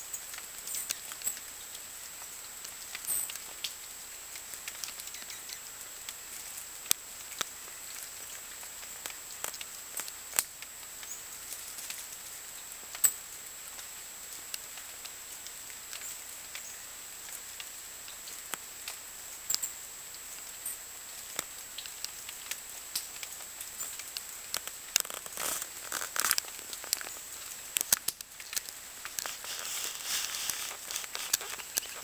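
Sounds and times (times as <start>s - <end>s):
steady hiss: 0.0s - 32.0s
birds pecking and shuffling: 23.1s - 32.0s.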